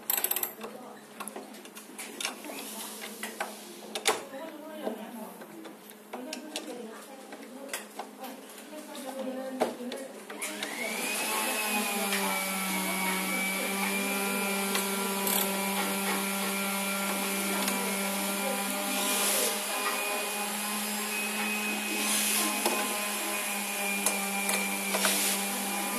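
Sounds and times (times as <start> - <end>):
electric motor humming and whining: 10.4 - 25.9.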